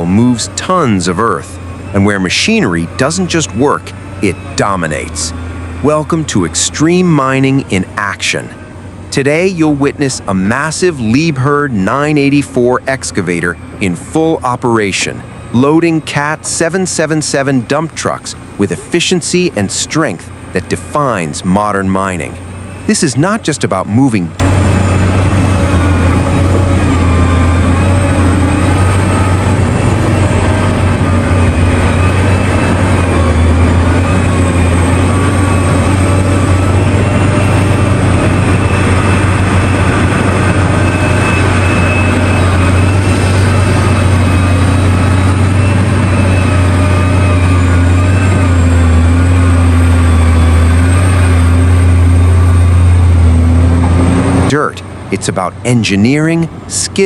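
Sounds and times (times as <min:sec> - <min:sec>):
heavy diesel machinery drone: 0:00.0 - 0:57.0.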